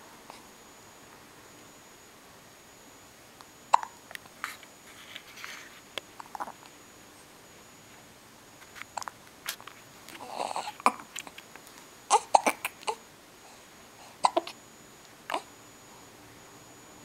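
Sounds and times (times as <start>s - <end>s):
person hiccuping: 3.7s - 4.0s, 12.1s - 13.0s, 14.2s - 14.6s.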